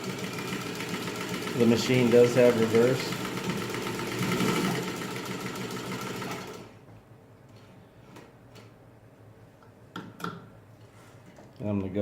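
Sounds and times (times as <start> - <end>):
sewing machine stitching: 0.0 - 6.7.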